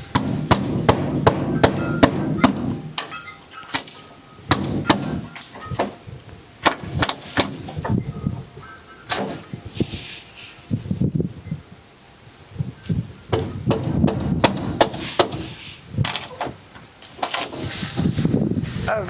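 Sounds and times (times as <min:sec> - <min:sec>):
wooden crate knocking and cracking: 0:03.8 - 0:06.0.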